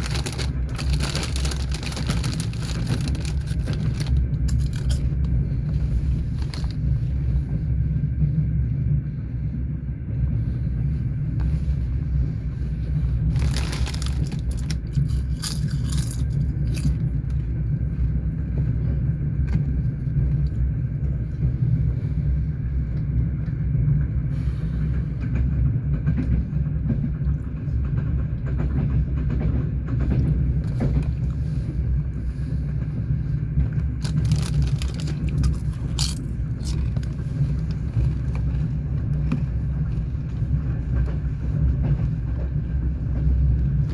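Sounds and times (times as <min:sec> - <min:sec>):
train carriage rumble: 0:00.0 - 0:43.9
train wheel clacks: 0:24.6 - 0:43.9.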